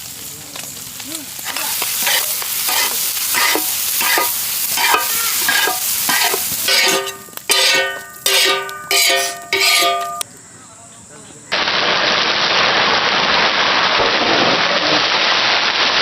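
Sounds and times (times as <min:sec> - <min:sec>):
food sizzling in oil: 0:00.0 - 0:10.2
spatula scraping pan: 0:01.5 - 0:10.2
short ringing tones: 0:03.4 - 0:10.2.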